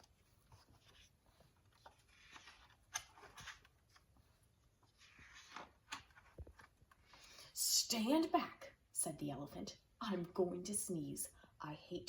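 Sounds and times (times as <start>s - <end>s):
faint paper rustle: 0.0s - 7.4s.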